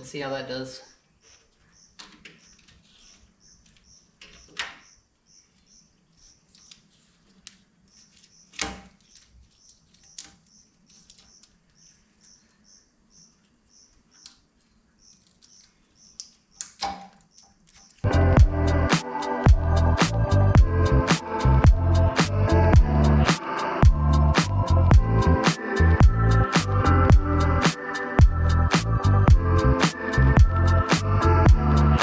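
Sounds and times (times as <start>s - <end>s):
high chirp: 18.0s - 32.0s
loud music: 18.1s - 32.0s.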